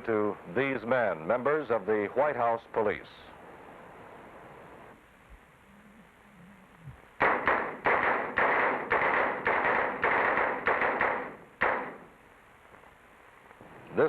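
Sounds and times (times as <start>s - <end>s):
pistol shots: 7.2s - 12.2s.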